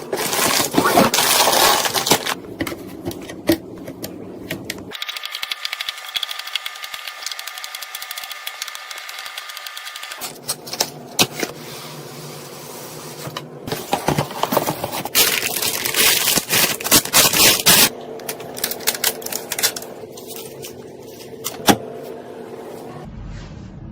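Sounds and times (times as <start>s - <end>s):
computer parts clicking and tapping: 3.9s - 10.9s
low hum: 17.9s - 23.9s.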